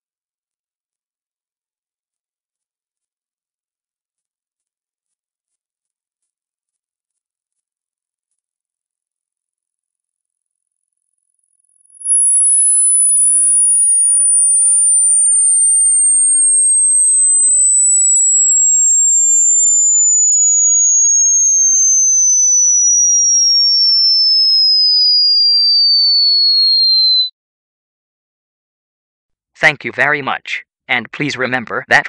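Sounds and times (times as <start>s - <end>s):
high-pitched sine test tone: 10.4s - 27.3s.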